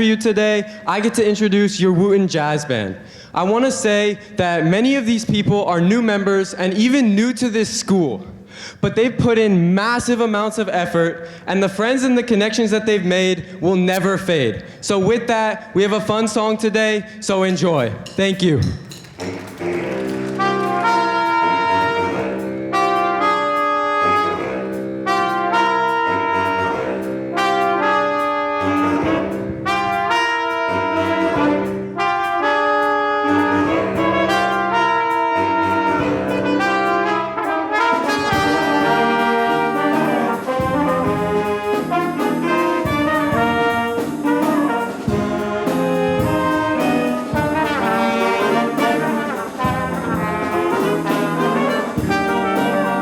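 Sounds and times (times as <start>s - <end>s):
jazz band playing: 0.0s - 2.0s, 17.8s - 53.0s
drums: 17.6s - 53.0s.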